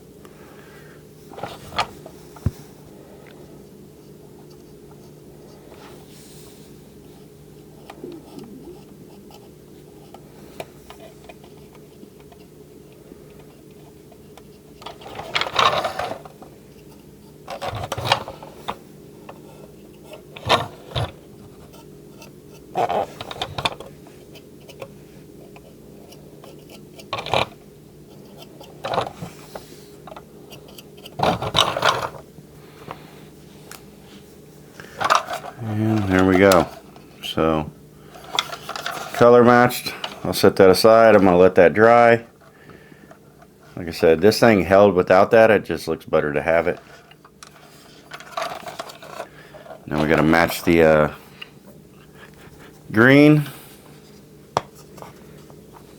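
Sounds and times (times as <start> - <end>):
low electrical hum: 0.0 - 55.9
brush and plastic parts scraping: 1.3 - 2.7, 4.0 - 12.5, 13.3 - 32.2, 34.8 - 37.2, 38.1 - 40.4, 46.4 - 55.9.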